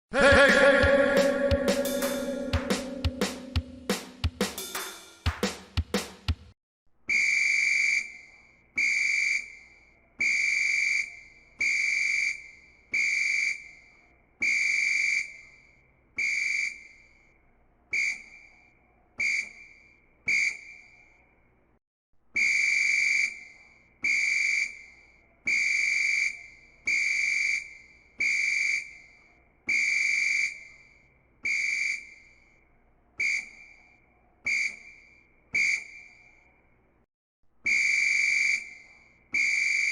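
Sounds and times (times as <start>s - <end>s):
referee's whistle blasts: 1.0s - 3.6s, 7.1s - 8.2s, 10.2s - 13.7s, 22.4s - 24.9s, 25.5s - 29.0s, 29.7s - 30.7s, 31.4s - 32.2s, 33.2s - 33.6s, 34.5s - 35.0s, 35.6s - 36.0s, 37.7s - 38.8s, 39.4s - 39.9s.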